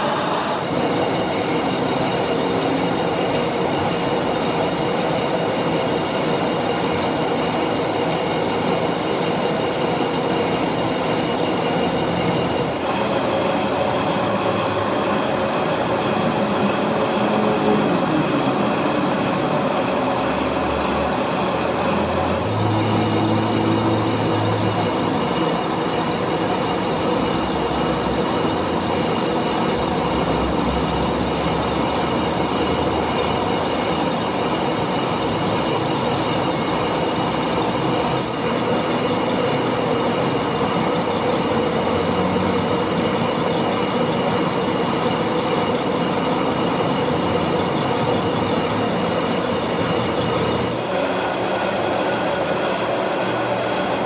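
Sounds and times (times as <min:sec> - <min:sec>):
metal lathe cutting metal: 0:00.0 - 0:54.0
steady high machine tones: 0:00.0 - 0:54.0.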